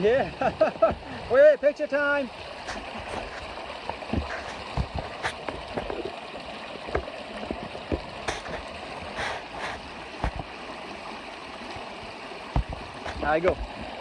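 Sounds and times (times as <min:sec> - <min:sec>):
water running over rocks: 0:00.0 - 0:14.0
knocks and splashes: 0:02.6 - 0:10.7, 0:11.6 - 0:14.0.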